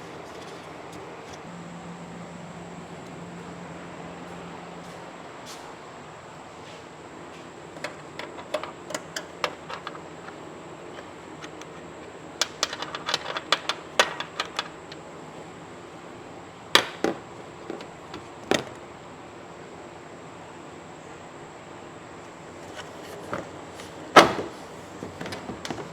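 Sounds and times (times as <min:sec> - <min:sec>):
hand tools clicking on car parts: 0:07.8 - 0:15.0.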